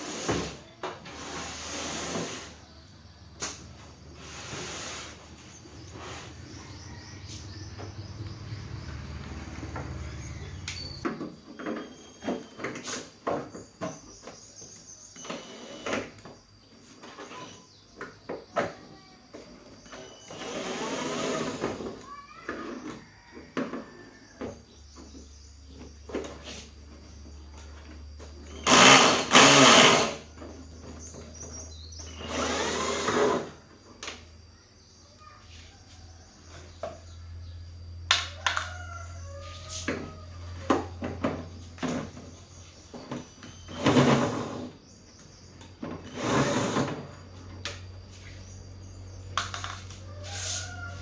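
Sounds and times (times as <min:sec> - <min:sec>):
small motor whirring: 0:20.0 - 0:22.0, 0:28.6 - 0:30.3, 0:32.0 - 0:33.6, 0:46.0 - 0:47.2.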